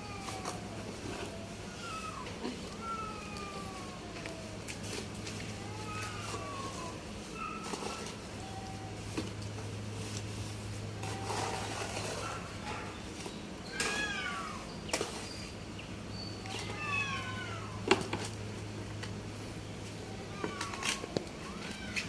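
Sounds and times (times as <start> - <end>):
animal drawn-out cries: 0.0 - 4.7, 5.4 - 9.0, 16.4 - 17.9.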